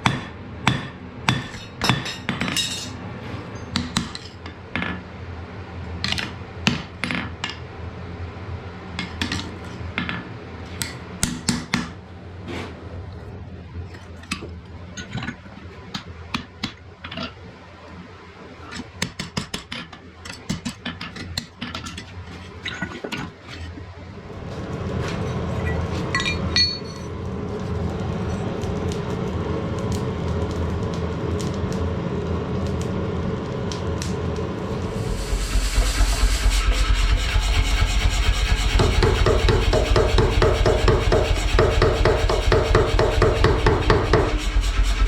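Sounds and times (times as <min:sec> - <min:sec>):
hammer tapping on iron: 0:38.8 - 0:44.4.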